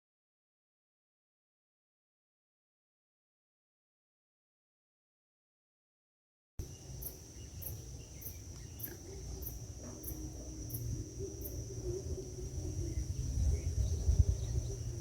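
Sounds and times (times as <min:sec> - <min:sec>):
insect high-pitched buzz: 0:06.6 - 0:15.0
insect short chirps: 0:06.6 - 0:15.0
low rumble: 0:07.8 - 0:15.0.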